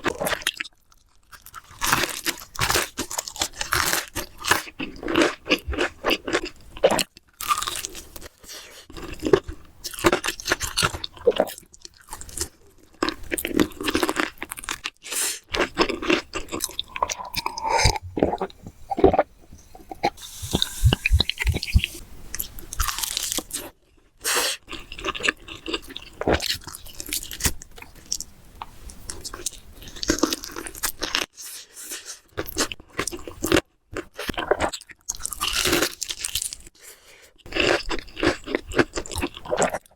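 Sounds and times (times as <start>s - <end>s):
wet chewing: 8.9s - 23.7s.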